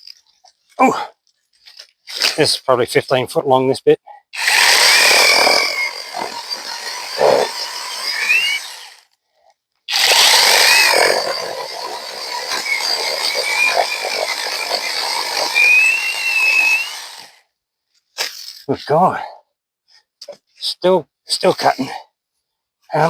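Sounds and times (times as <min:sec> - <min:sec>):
chainsaw cutting through log: 0:04.4 - 0:09.1, 0:09.9 - 0:17.5.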